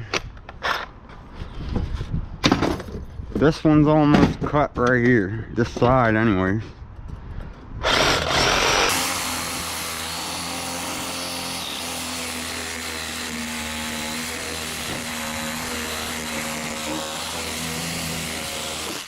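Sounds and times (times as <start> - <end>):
power tool cutting sheet metal: 7.8 - 19.0.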